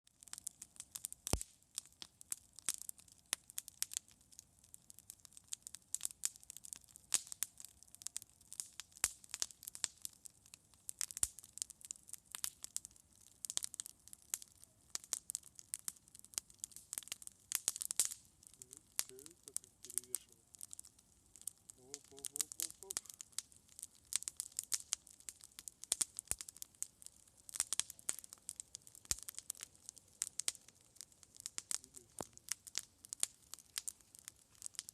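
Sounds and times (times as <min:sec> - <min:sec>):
campfire crackling: 0:00.1 - 0:34.9
faint hiss: 0:18.6 - 0:20.6, 0:21.7 - 0:23.3, 0:31.8 - 0:32.5.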